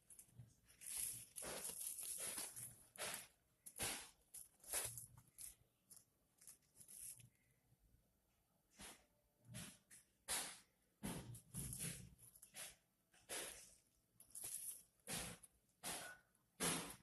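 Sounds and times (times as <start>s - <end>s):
packaging rustling and crinkling: 0.0s - 7.5s, 13.5s - 15.5s.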